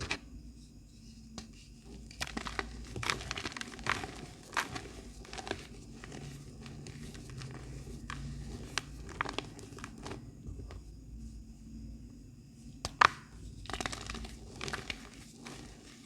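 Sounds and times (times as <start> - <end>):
chalk crunching and crackling: 1.4 - 10.2, 12.8 - 16.0.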